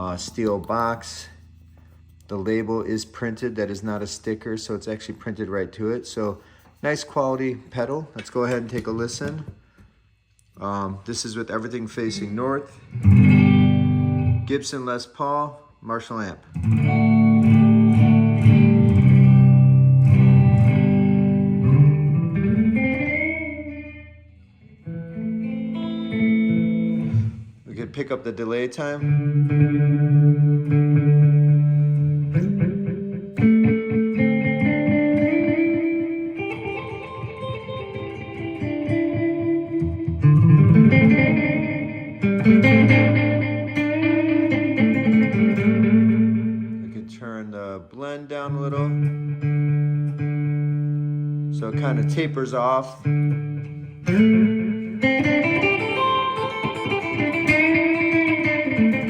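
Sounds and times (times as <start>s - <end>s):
electric guitar with delay echoes: 11.6s - 14.8s, 16.4s - 27.6s, 29.0s - 47.2s, 48.4s - 59.0s.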